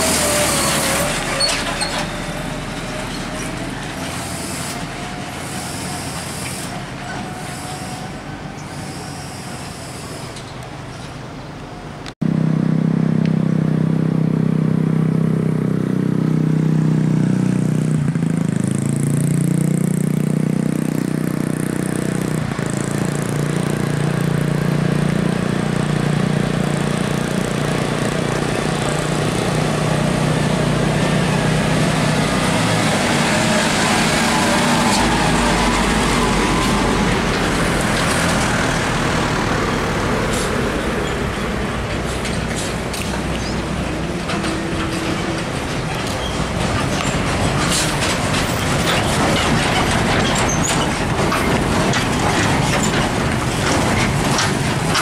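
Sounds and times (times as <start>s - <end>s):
motor vehicle noise: 0.0s - 55.0s
low drone with sliding pitch: 27.5s - 48.1s.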